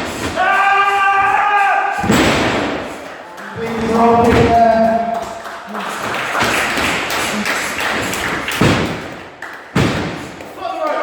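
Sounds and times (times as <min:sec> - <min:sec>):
loud slam: 0:00.0 - 0:03.1, 0:06.4 - 0:10.5
crowd noise: 0:01.8 - 0:11.0
bodies thudding on ring canvas: 0:06.7 - 0:09.2, 0:09.8 - 0:10.6.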